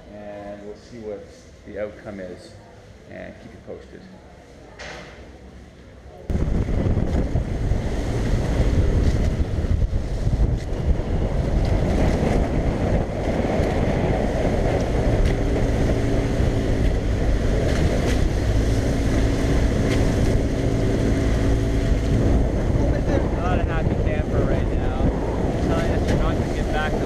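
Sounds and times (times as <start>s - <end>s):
motorboat engine running: 6.3s - 27.0s
wind buffeting microphone: 6.3s - 27.0s.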